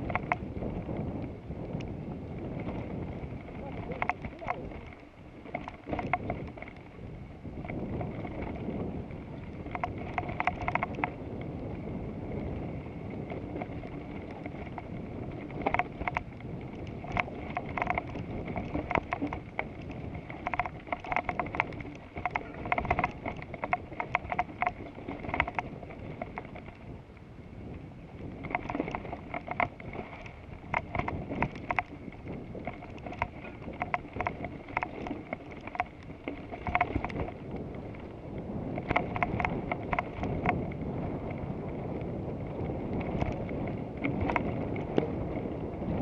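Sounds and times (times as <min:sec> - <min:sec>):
bike tyre rumble: 0:00.0 - 0:46.0
wind rushing over camera: 0:00.0 - 0:46.0.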